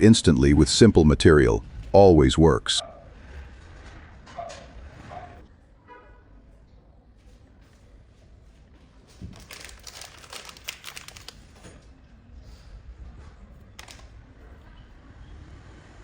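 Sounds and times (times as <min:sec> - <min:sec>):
low steady rumble: 0:00.0 - 0:05.0
handling clicks and crinkles: 0:09.1 - 0:11.9.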